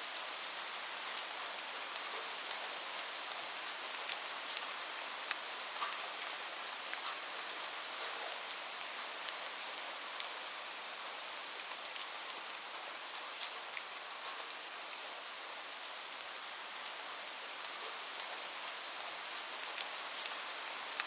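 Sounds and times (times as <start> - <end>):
light rain hiss: 0.0 - 21.0
raindrops ticking on a surface: 0.1 - 21.0.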